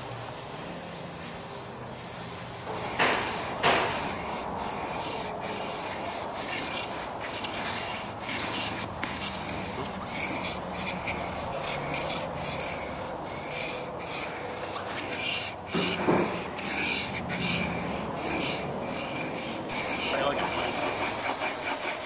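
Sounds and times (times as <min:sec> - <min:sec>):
blade scraping on sharpening stone: 0:04.2 - 0:22.0.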